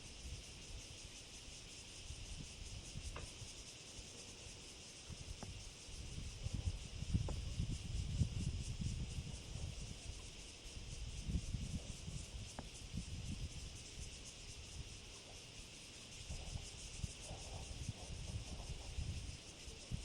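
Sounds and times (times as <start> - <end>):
insects chorus: 0.0 - 20.0
wind buffeting microphone: 5.1 - 15.0, 16.2 - 20.0.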